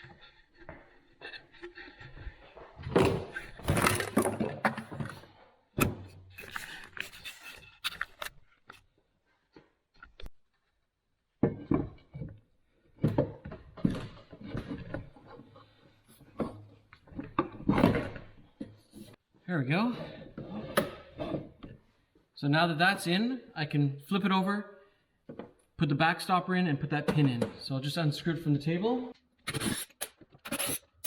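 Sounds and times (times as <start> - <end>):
metal scraping: 29.5 - 31.0.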